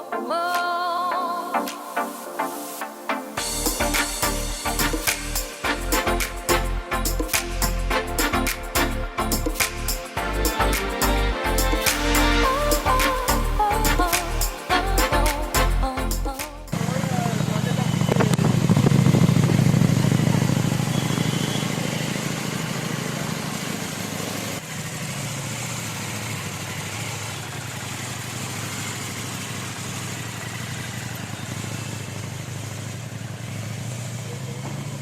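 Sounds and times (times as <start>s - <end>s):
motorcycle engine running: 16.7s - 35.0s.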